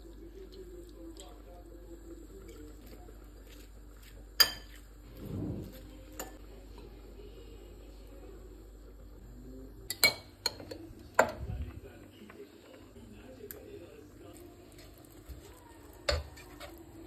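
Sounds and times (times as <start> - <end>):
dishes and cutlery clinking: 4.4 - 6.4.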